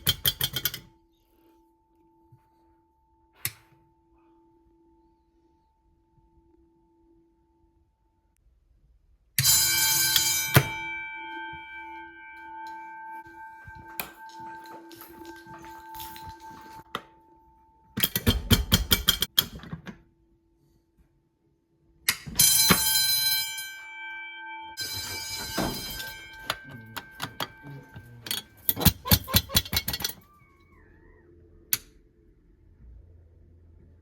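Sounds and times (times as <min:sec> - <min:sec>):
fire alarm bells ringing: 0:09.4 - 0:18.1, 0:22.2 - 0:30.9.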